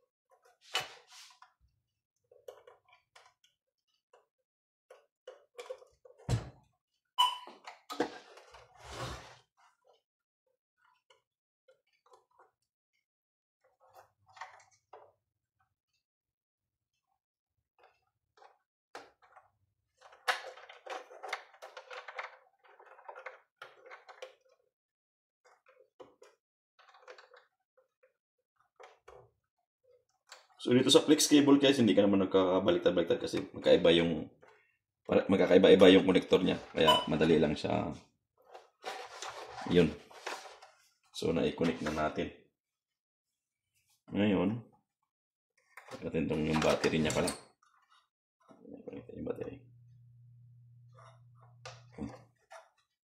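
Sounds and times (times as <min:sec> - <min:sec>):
clicks and rattles of plastic parts: 0:02.2 - 0:06.8, 0:10.8 - 0:16.0, 0:17.8 - 0:24.7, 0:25.4 - 0:31.5, 0:45.6 - 0:49.6, 0:50.9 - 0:53.0.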